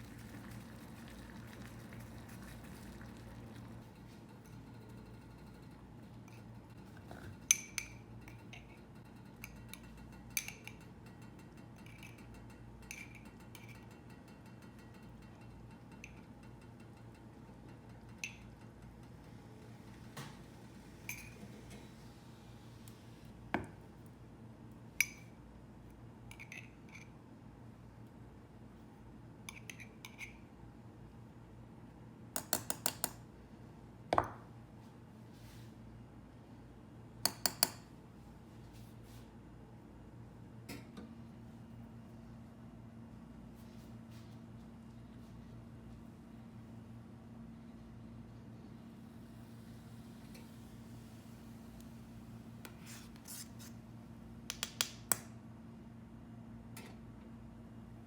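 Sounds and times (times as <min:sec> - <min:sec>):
dishes and glassware clinking: 0:09.4 - 0:18.6.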